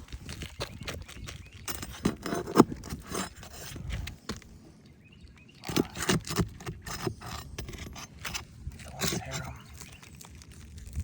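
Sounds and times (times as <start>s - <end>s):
shingles tearing: 0.0s - 4.5s, 5.6s - 11.0s
pry tool scraping and clicking: 1.6s - 4.4s, 5.6s - 9.6s.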